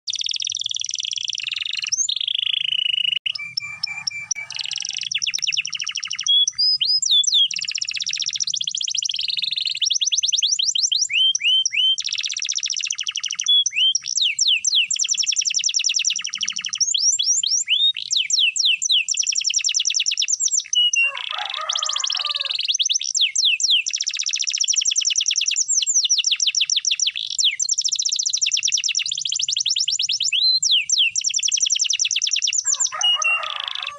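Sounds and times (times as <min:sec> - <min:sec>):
canary singing trills: 0:00.1 - 0:33.9.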